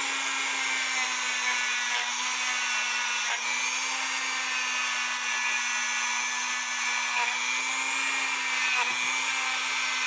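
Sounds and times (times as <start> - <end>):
rotary tool motor hum: 0.0 - 10.0.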